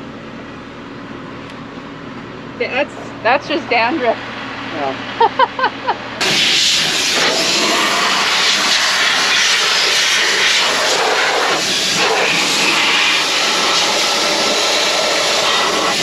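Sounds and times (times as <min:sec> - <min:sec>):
compressed air hissing from nozzle: 0:06.2 - 0:16.0.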